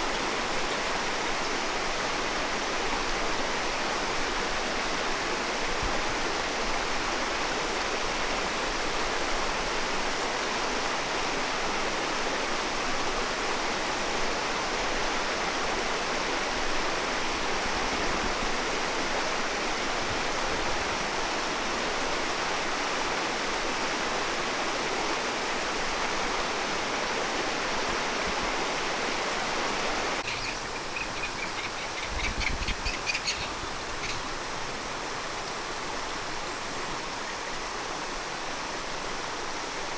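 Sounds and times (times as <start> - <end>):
waterfall rushing: 21.5 - 32.0
high chirps: 30.2 - 34.2.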